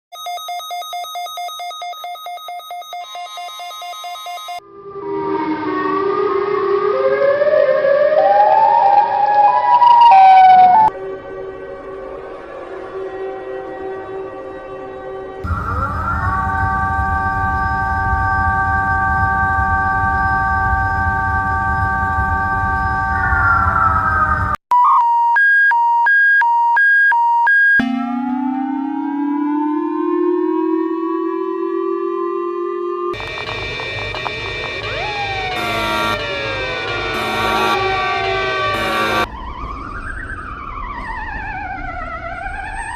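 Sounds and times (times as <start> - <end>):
alarm siren wailing: 4.0 - 11.0, 15.4 - 42.9
low droning tone: 15.4 - 24.6, 33.2 - 39.4.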